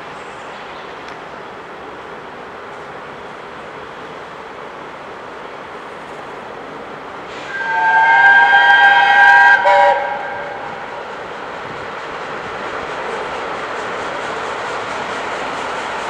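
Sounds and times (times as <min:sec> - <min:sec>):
rush of train passing: 0:00.0 - 0:16.0
train whistle: 0:07.3 - 0:11.0.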